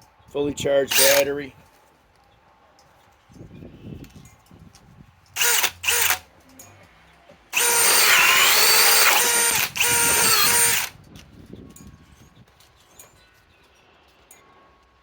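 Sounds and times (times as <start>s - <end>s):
cordless drill boring into wood: 0.9s - 1.3s, 5.4s - 6.2s, 7.5s - 11.0s.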